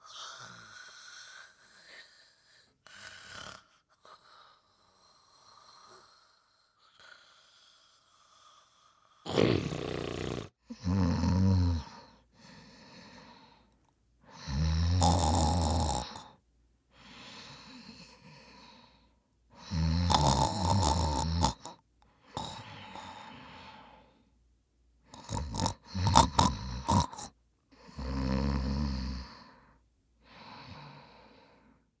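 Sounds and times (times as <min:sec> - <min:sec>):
loud rattling snoring: 0:07.0 - 0:11.9, 0:14.4 - 0:16.3, 0:19.7 - 0:21.8, 0:25.2 - 0:27.3, 0:27.9 - 0:29.3.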